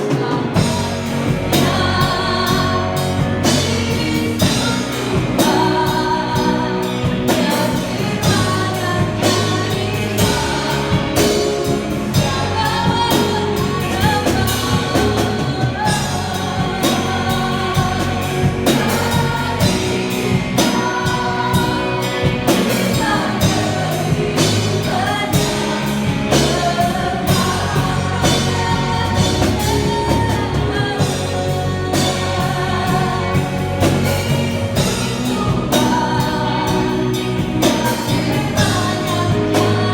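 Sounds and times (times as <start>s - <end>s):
band with bass and drums: 0.0s - 39.9s
group singing gospel song: 0.0s - 39.9s.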